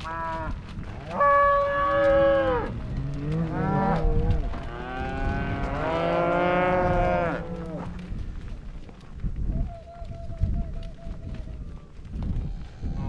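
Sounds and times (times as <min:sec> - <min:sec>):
cows mooing: 0:00.0 - 0:08.2.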